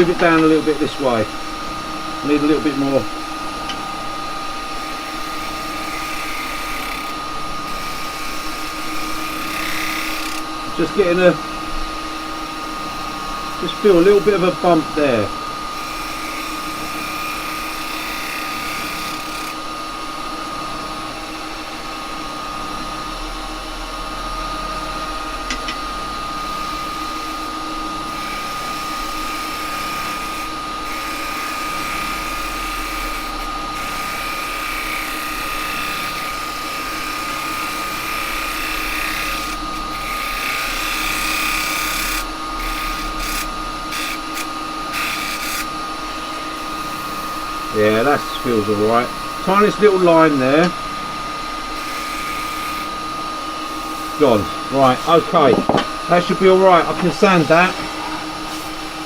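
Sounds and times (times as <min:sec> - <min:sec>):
lathe motor whine: 0:00.0 - 0:59.0
gouge cutting wood: 0:04.9 - 0:11.2, 0:13.6 - 0:19.6, 0:26.7 - 0:50.7.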